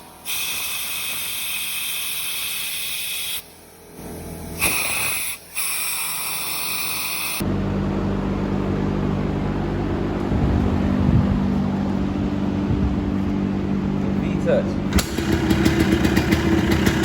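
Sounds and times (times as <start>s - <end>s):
hissing jet of compressed air: 0.0s - 7.4s.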